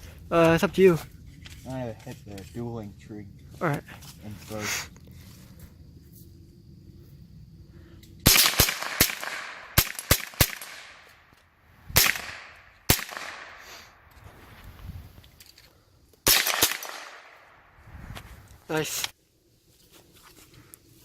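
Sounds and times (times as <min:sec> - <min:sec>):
echoing gunshots: 0:08.2 - 0:11.2, 0:11.9 - 0:14.1, 0:16.2 - 0:17.8.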